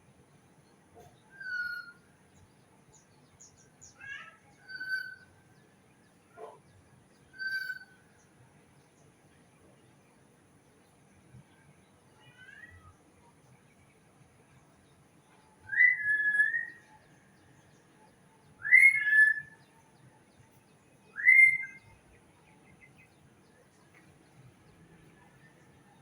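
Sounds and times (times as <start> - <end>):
bird whistled calls: 1.3 - 2.0, 4.6 - 5.3, 7.3 - 8.0, 15.6 - 16.9, 18.6 - 19.6, 21.1 - 21.9.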